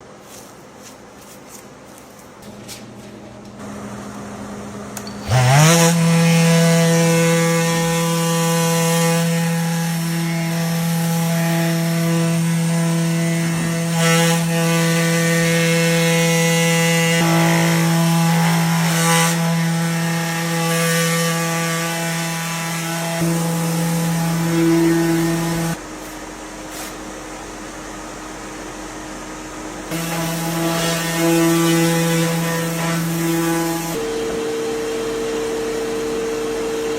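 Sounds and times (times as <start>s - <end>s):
electric sander motor humming: 3.5s - 25.8s.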